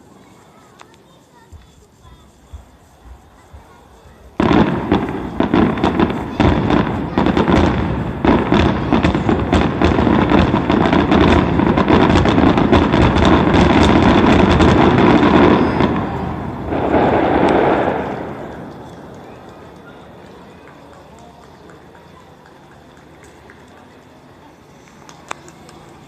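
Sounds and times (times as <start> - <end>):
fireworks bangs and crackling: 0.0 - 26.0.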